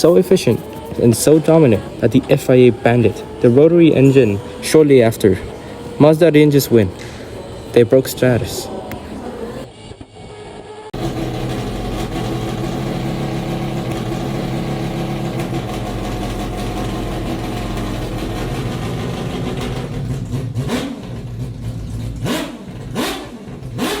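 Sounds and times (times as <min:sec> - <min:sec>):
rotary engine buzzing and revving: 0:11.0 - 0:24.0.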